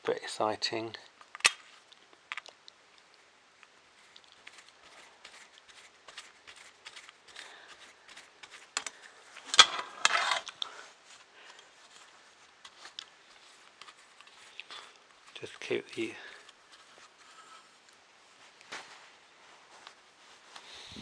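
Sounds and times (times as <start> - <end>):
parts clattering: 8.4 - 10.7.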